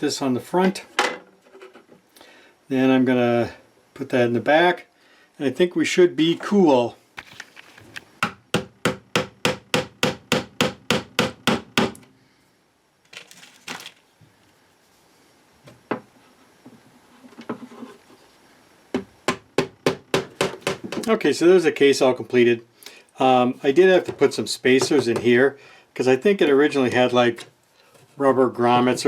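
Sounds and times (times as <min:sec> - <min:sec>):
hammer tapping on wood: 0:08.2 - 0:12.0.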